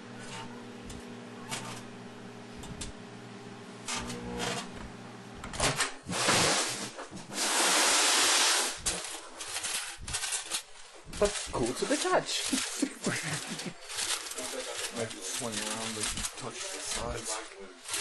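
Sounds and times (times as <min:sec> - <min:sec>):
microwave transformer hum: 0:00.0 - 0:18.0
foil arcing crackles: 0:07.9 - 0:18.0.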